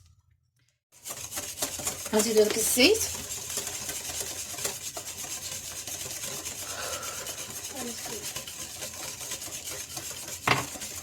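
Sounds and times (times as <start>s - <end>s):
batter mixed by hand in bowl: 1.0s - 11.0s.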